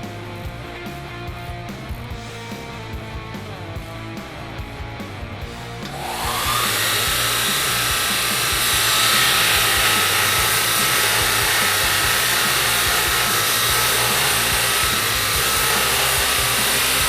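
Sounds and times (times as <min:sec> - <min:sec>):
belt grinder whining: 0:05.9 - 0:17.0.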